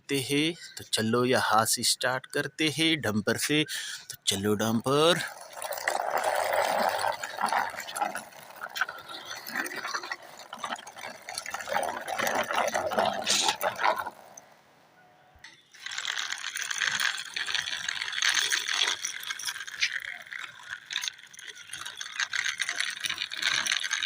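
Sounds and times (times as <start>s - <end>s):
toy truck wheels scraping and rattling: 4.2s - 14.6s, 15.5s - 24.0s.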